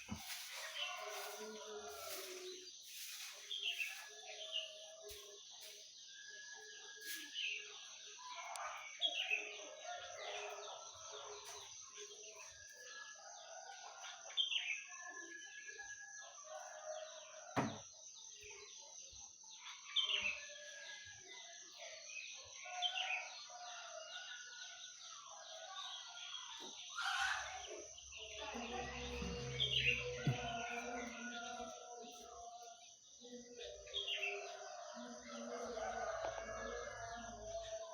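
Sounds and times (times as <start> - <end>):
songbirds chirping: 0.0 - 37.9
chickens calling: 26.9 - 31.2.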